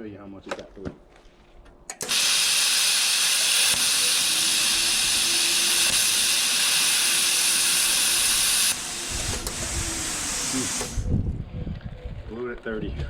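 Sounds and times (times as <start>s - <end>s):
plasma cutter arc hissing: 2.0s - 11.1s.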